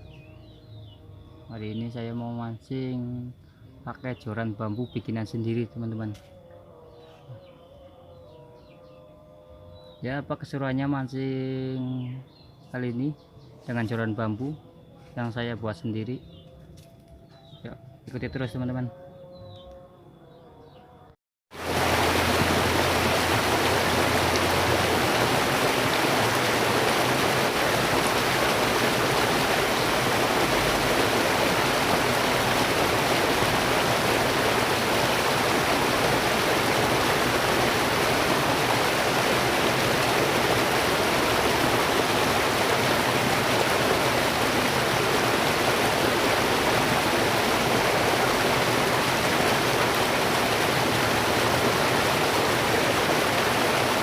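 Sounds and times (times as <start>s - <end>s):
stream water rushing: 21.5s - 54.0s.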